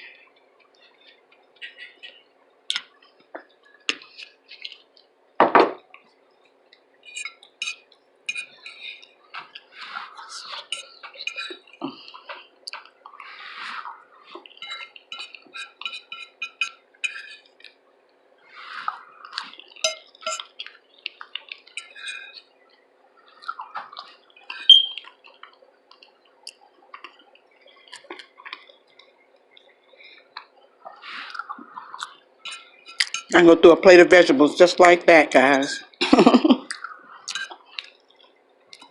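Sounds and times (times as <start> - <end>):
cutlery clinking on a plate: 10.6 - 11.6, 14.6 - 17.4, 19.8 - 20.5, 32.5 - 33.4
wet chewing and lip-smacking: 18.8 - 33.3, 36.6 - 38.9.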